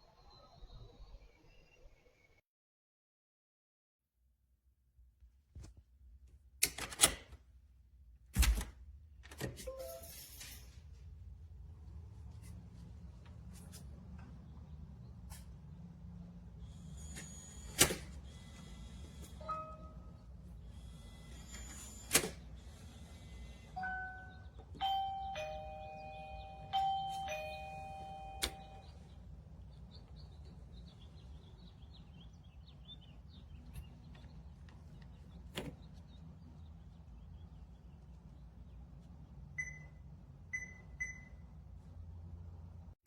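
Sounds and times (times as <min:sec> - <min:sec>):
two-note doorbell chime: 0:19.4 - 0:20.1, 0:23.8 - 0:29.0.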